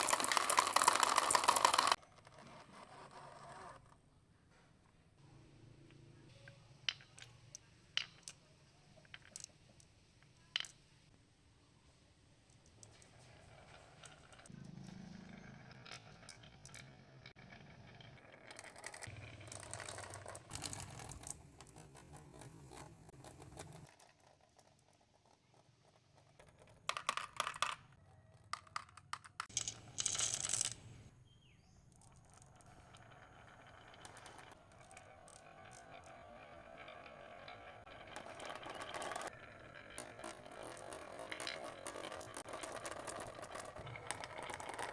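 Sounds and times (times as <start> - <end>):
marbles clattering: 0.0 - 2.0, 6.8 - 8.4, 9.0 - 10.8, 12.5 - 14.5, 15.4 - 25.3, 25.9 - 31.1, 31.9 - 44.9
marbles rolling down ramps: 0.0 - 4.0, 12.5 - 14.5, 15.4 - 31.1, 31.9 - 44.9.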